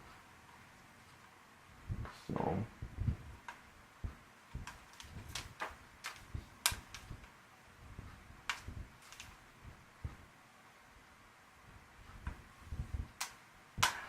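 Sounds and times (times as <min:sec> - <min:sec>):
laptop parts clicking and tapping: 0:04.6 - 0:07.3, 0:08.4 - 0:09.4.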